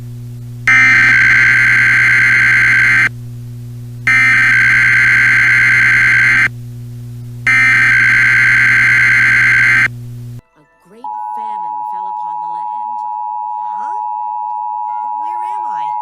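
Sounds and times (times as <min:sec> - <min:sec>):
steady low hum: 0:00.0 - 0:10.4
buzzing digital data burst: 0:00.7 - 0:03.1, 0:04.1 - 0:06.5, 0:07.5 - 0:09.9.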